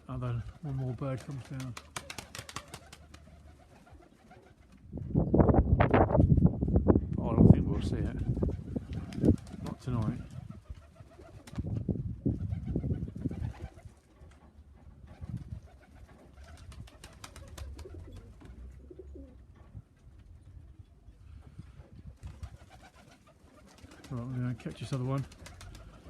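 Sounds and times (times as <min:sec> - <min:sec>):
pigeons cooing: 0:00.2 - 0:04.7, 0:08.4 - 0:11.7, 0:15.1 - 0:19.6, 0:22.3 - 0:26.0.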